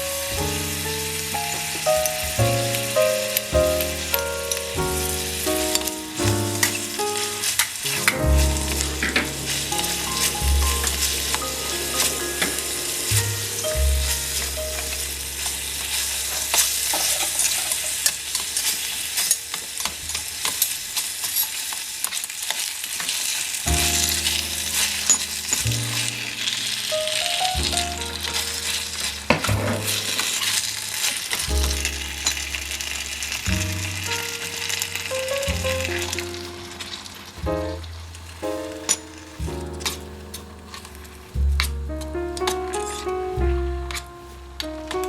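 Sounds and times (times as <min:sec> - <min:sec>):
food sizzling in a frying pan: 0:00.0 - 0:37.4
background music with deep bass: 0:00.3 - 0:18.8.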